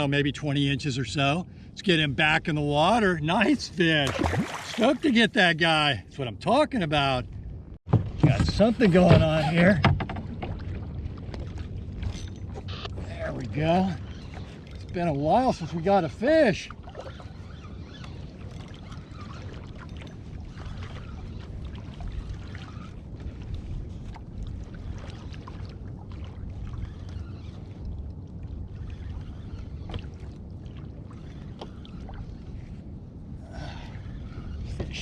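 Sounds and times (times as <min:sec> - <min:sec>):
water lapping against kayak hull: 0:01.0 - 0:05.8, 0:07.3 - 0:35.0
small splashes: 0:04.0 - 0:05.1.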